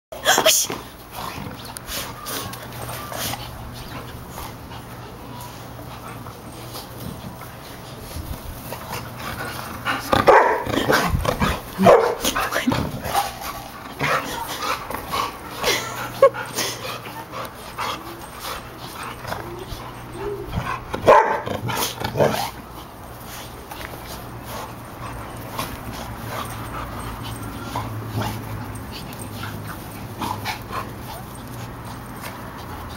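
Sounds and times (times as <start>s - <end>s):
puppies barking and yipping: 8.6s - 32.9s.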